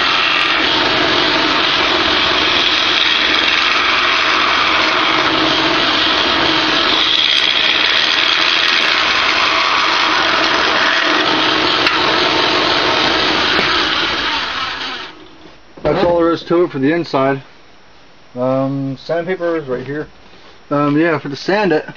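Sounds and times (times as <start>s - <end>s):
gouge cutting wood bowl: 0.0s - 15.1s
wood lathe motor running: 0.0s - 15.3s.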